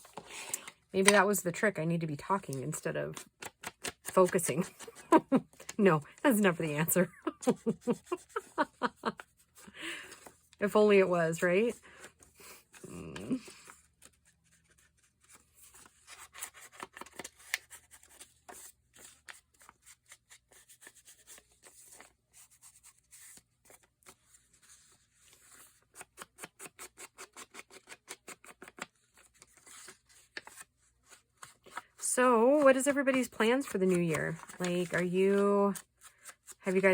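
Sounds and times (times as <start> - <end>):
paper rustling and rubbing: 7.4 - 10.6, 11.6 - 36.9.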